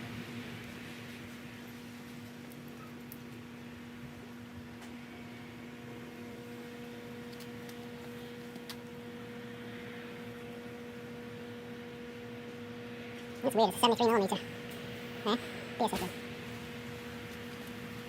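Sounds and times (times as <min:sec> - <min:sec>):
steady hum: 0:04.6 - 0:18.0.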